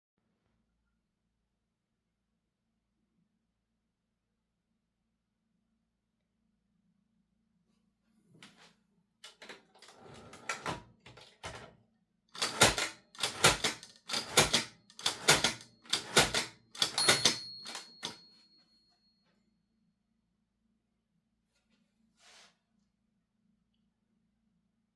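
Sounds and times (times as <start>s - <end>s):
manual typewriter clacking: 12.4s - 18.2s.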